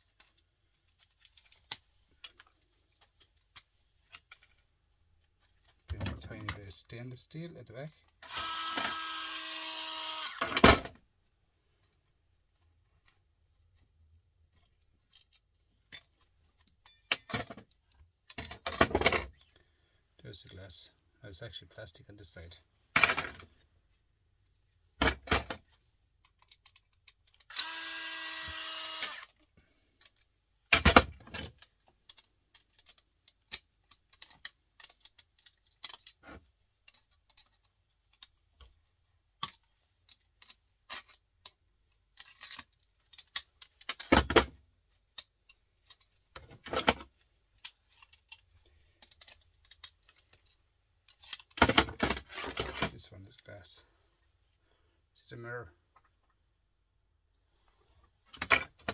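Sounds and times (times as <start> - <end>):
plastic and metal parts rattling: 30.8 - 38.7, 39.4 - 44.5.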